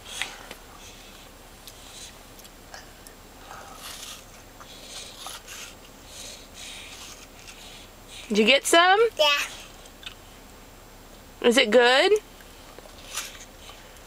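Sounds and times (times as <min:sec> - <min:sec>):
child biting an apple: 0:01.8 - 0:05.8.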